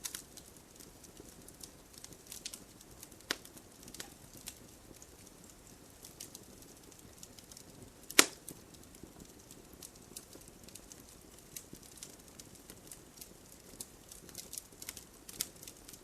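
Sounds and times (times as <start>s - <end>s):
faint hiss: 0.0s - 16.0s
wood fire crackling: 0.0s - 16.0s
loud sharp snap: 8.2s - 8.4s.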